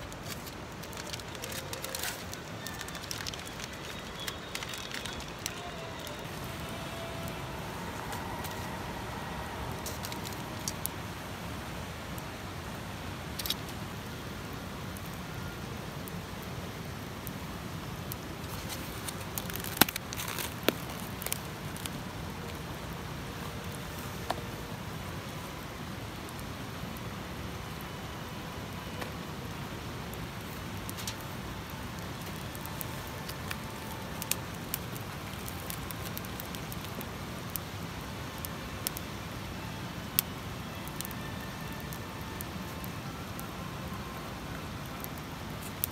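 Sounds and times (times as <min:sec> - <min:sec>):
campfire crackling: 0:00.0 - 0:45.9
sharp fire pops: 0:19.2 - 0:21.9.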